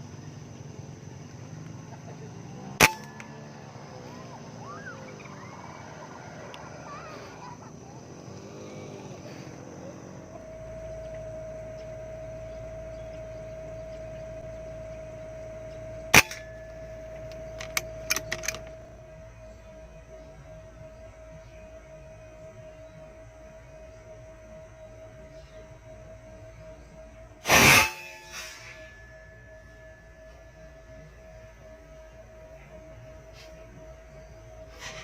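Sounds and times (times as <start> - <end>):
faint steady tone: 0.0 - 35.0
air rifle shot: 16.1 - 16.6, 27.4 - 28.7.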